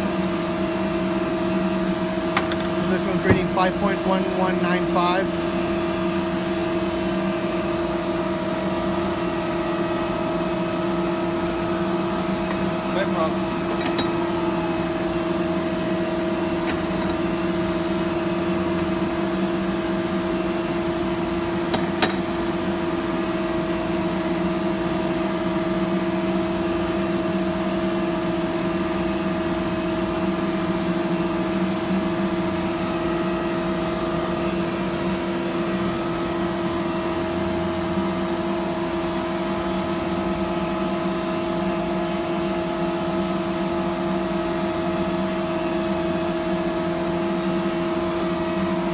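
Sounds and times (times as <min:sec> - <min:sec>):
shop machinery hum: 0:00.0 - 0:26.6.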